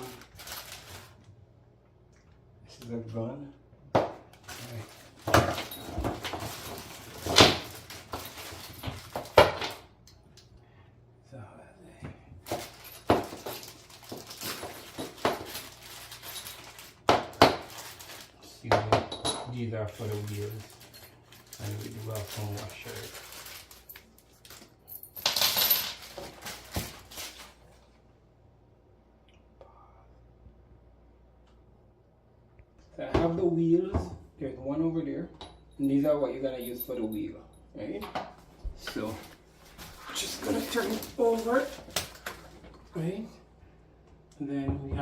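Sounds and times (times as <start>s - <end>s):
rustling: 0.0s - 1.2s, 12.4s - 18.4s, 19.9s - 28.0s
metal washers jingling: 35.4s - 38.1s.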